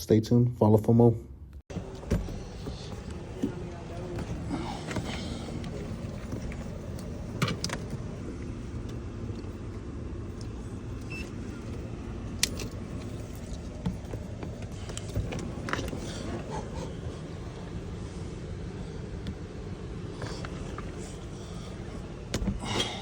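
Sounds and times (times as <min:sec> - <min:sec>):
steady low rumble: 0:01.3 - 0:23.0.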